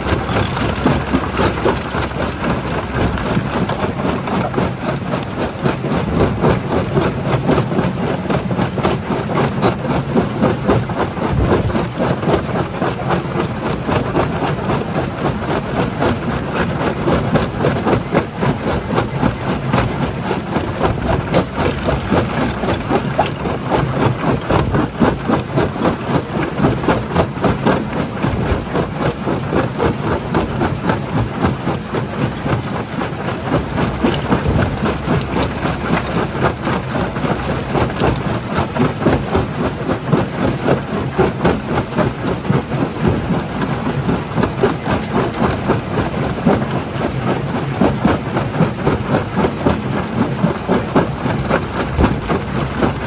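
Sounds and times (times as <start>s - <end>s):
machinery drone: 0.0s - 12.5s.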